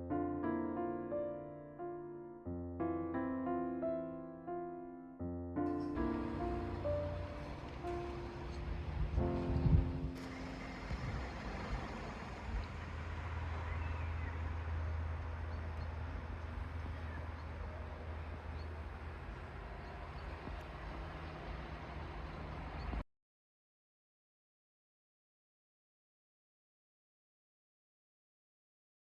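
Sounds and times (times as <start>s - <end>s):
car engine hum and road noise: 5.7s - 23.0s.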